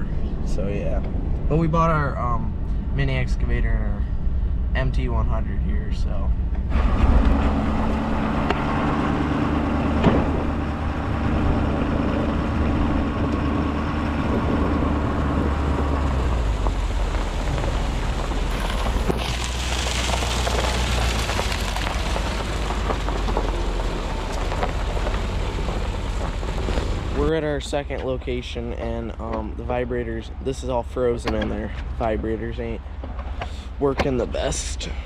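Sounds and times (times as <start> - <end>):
tyre and road noise: 0.0 - 35.0
truck engine running: 6.4 - 28.4.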